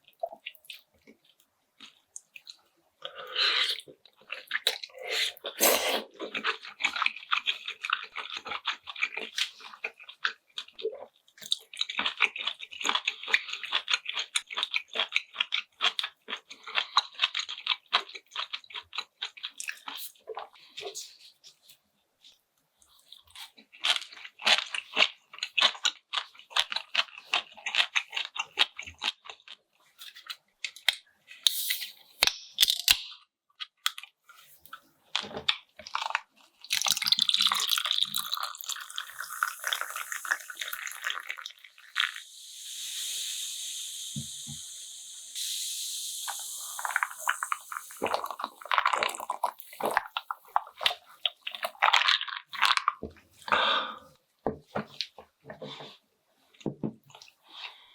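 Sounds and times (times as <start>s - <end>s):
wet chewing and crunching: 0.0s - 21.4s, 22.8s - 31.1s, 32.6s - 42.4s, 46.5s - 53.5s
steady hissing noise: 38.9s - 49.7s.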